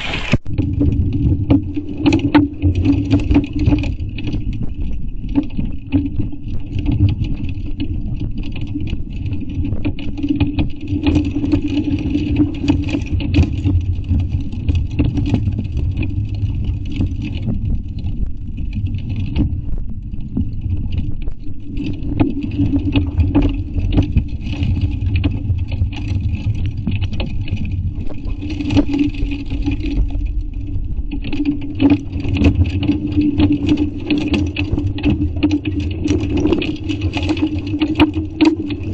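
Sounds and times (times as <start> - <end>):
low rumble: 0.0 - 38.9.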